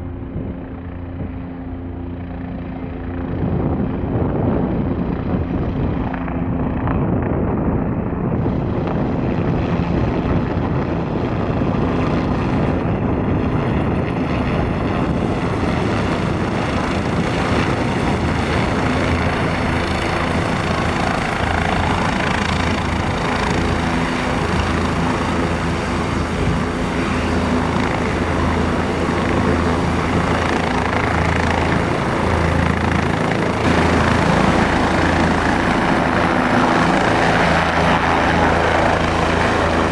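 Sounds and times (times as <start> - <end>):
helicopter running: 0.0 - 39.9.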